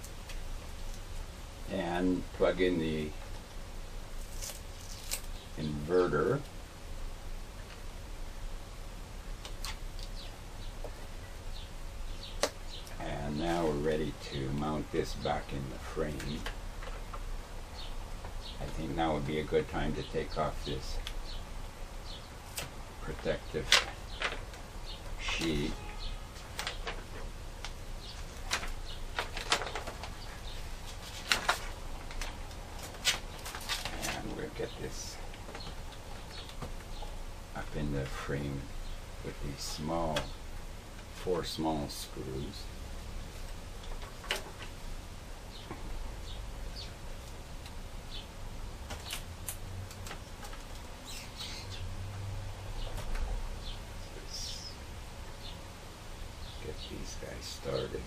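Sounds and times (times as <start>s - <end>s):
low steady hum: 0.0s - 58.0s.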